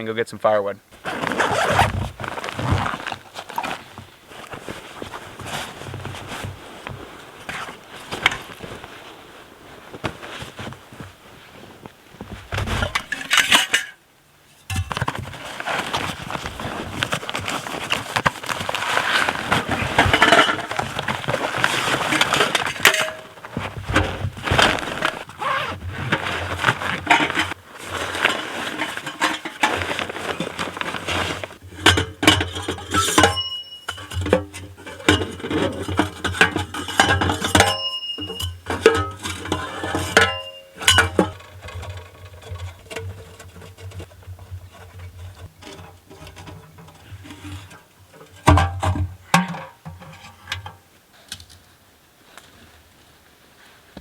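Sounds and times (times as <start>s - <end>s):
metal clinking and clanking: 12.9s - 14.0s, 14.6s - 15.2s, 19.9s - 21.2s, 22.0s - 23.4s, 28.7s - 30.6s, 31.6s - 50.8s.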